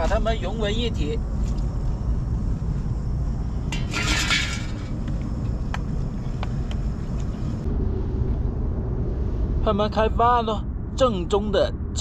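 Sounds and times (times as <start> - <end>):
low rumble: 0.0 - 12.0
utensil scraping cooking pot: 3.7 - 4.9.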